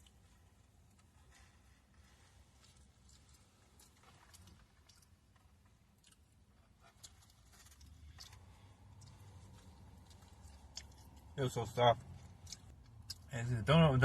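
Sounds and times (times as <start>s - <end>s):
person chewing: 2.4s - 11.4s, 12.0s - 13.3s.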